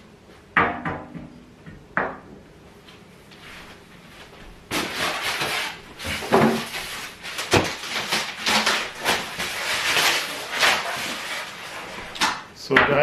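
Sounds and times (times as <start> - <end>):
rustling and scraping handling: 2.8 - 12.5.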